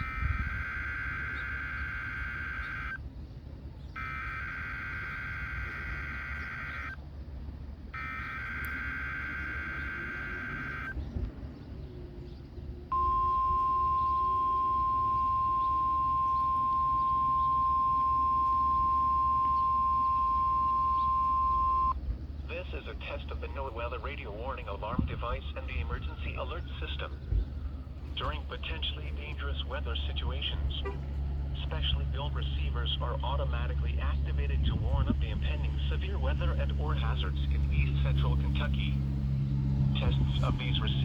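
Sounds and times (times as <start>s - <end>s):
steady high alarm tone: 0.0s - 3.0s, 4.0s - 7.0s, 7.9s - 11.0s, 12.9s - 22.0s
warbling digital data tones: 0.0s - 3.0s, 4.0s - 7.0s, 8.0s - 10.9s, 13.0s - 21.9s
low radio hum: 0.0s - 11.3s, 12.9s - 41.0s.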